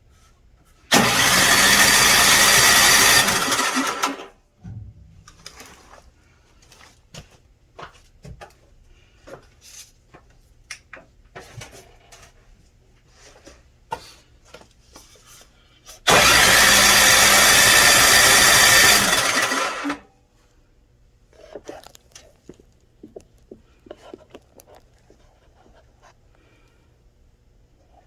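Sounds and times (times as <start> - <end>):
snowblower engine running: 0.9 - 4.3, 16.1 - 20.0.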